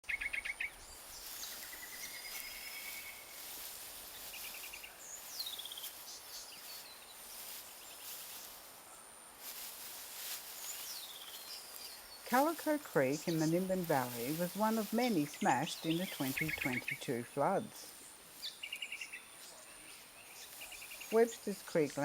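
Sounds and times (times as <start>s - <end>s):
birds trilling: 10.5s - 22.0s.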